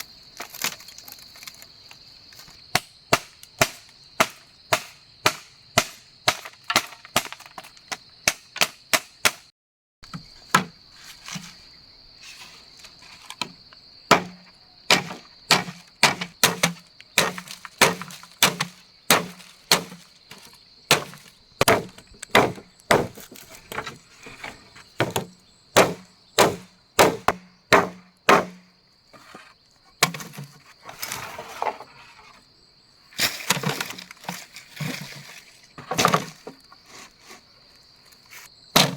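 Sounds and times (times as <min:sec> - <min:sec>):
tool chopping wood: 0:02.7 - 0:09.5, 0:10.1 - 0:10.8, 0:13.4 - 0:24.0, 0:25.0 - 0:28.7, 0:30.0 - 0:30.5, 0:35.8 - 0:36.6.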